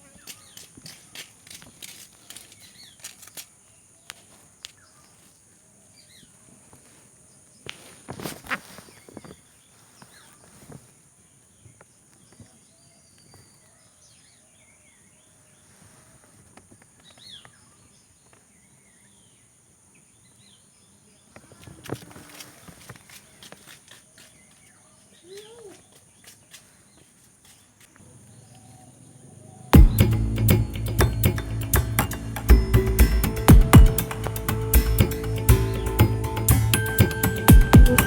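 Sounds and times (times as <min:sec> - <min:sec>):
light clicks and rustles: 0:00.3 - 0:05.3, 0:21.3 - 0:28.0
rustling scrape: 0:07.7 - 0:11.0, 0:21.7 - 0:24.7
steady high-pitched hiss: 0:14.0 - 0:38.0.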